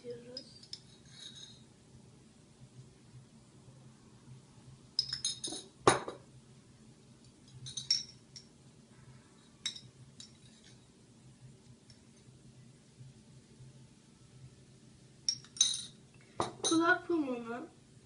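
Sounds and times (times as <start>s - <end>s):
light clinks and taps of glass: 0.3s - 1.6s, 5.0s - 6.2s, 7.2s - 8.5s, 9.6s - 10.8s, 15.2s - 16.9s.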